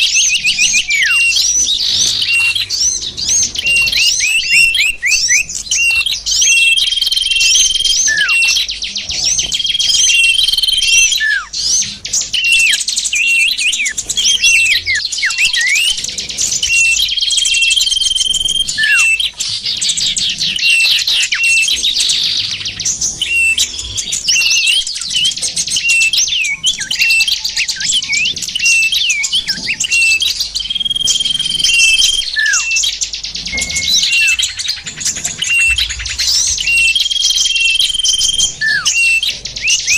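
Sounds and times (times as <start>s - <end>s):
small birds chirping and trilling: 0.0s - 39.9s
held whistle: 16.7s - 19.3s, 24.4s - 32.9s, 35.4s - 39.9s.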